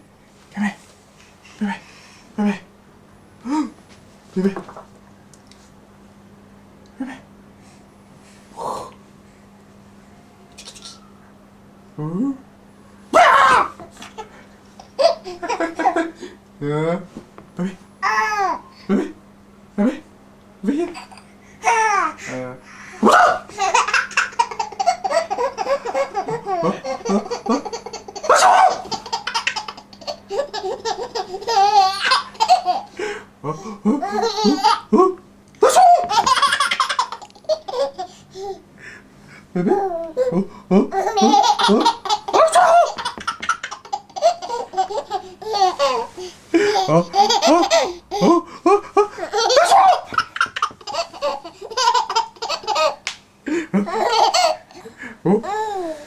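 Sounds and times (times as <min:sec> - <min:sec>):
baby laughing: 0:13.2 - 0:16.2, 0:20.8 - 0:22.2, 0:23.0 - 0:33.0, 0:33.6 - 0:35.0, 0:35.6 - 0:38.6, 0:39.6 - 0:53.1, 0:53.7 - 0:56.0
man sneezing: 0:23.0 - 0:23.5.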